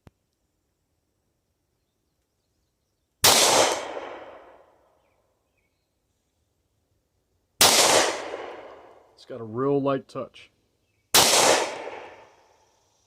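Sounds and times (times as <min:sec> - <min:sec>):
pistol shots with echo: 0:03.2 - 0:04.6, 0:07.6 - 0:08.9, 0:11.1 - 0:12.4.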